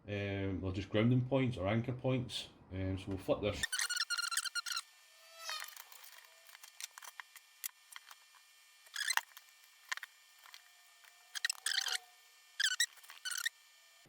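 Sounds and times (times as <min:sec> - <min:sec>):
short squeaks: 0:03.6 - 0:06.4, 0:08.9 - 0:09.4, 0:11.1 - 0:13.6
circuit board and tools clicking: 0:11.3 - 0:12.0.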